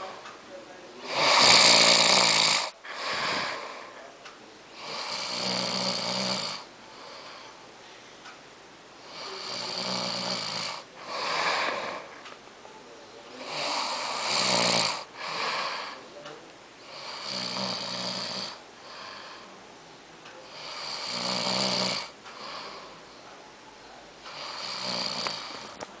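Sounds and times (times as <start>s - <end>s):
man snoring loudly: 1.0s - 3.7s, 4.8s - 6.7s, 9.1s - 12.0s, 13.4s - 16.0s, 16.9s - 18.6s, 20.5s - 22.8s, 24.3s - 25.8s.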